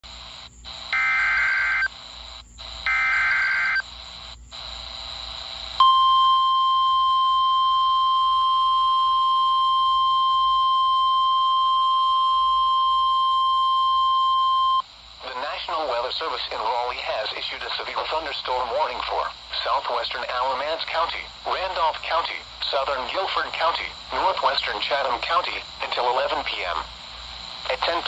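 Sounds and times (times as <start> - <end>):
faint radio hiss: 0.0 - 5.8, 14.8 - 28.0
steady warning alarm tone: 0.7 - 4.8, 5.8 - 14.8.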